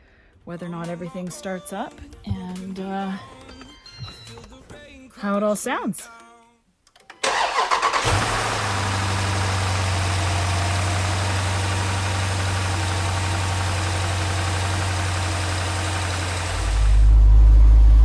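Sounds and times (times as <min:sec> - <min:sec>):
car engine cranking and idling: 0:07.2 - 0:18.0.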